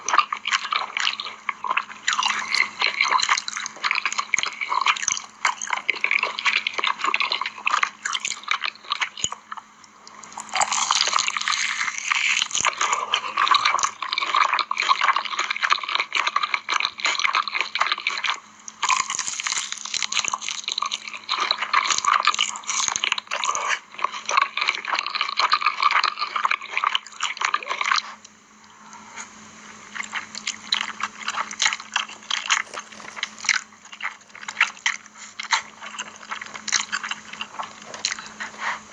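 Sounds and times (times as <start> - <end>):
chewing and slurping noodles: 0.1 - 28.2, 29.9 - 38.9
crunchy bites: 32.0 - 35.6.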